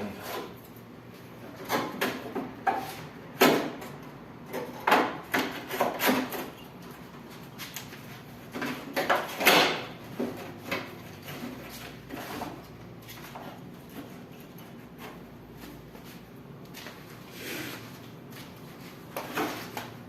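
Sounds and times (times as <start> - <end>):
parts knocking and clattering: 1.5 - 6.6, 8.4 - 15.3.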